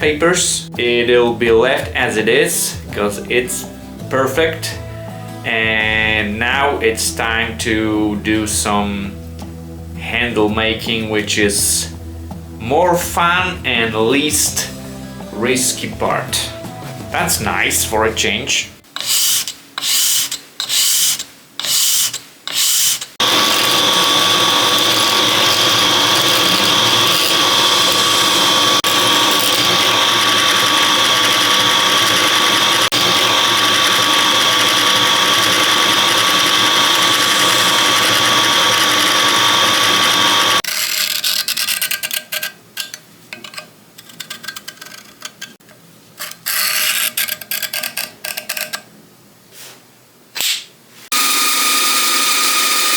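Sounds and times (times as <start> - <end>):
short bursts of tool work: 18.9 - 41.8
power tool whining: 22.6 - 40.6, 51.1 - 52.9.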